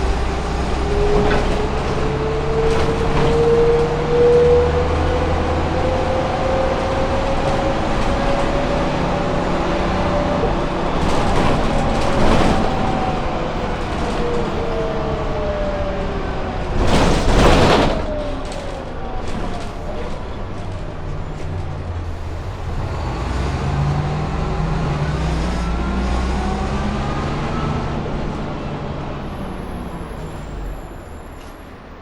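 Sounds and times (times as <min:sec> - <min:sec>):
loud clatter: 0:00.0 - 0:15.0, 0:16.6 - 0:21.6
bus engine rumble: 0:00.0 - 0:32.0
rattles inside bus: 0:00.0 - 0:32.0.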